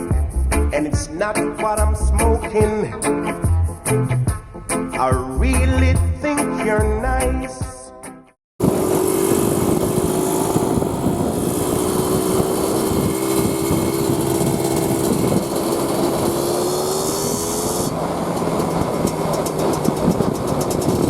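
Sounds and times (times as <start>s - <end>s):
two-stroke engine running: 8.6s - 21.0s.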